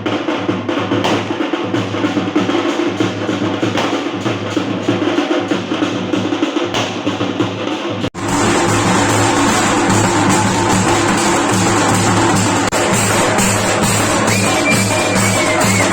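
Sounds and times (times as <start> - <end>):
drums beating fast rhythm: 0.0 - 15.9
low drone: 8.2 - 15.9.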